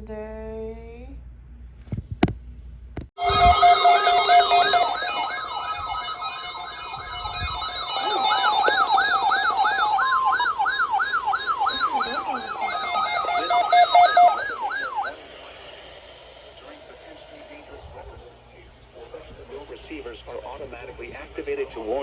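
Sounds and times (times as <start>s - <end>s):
electronic siren yelping: 3.2s - 15.2s
steady held tones: 3.2s - 17.6s.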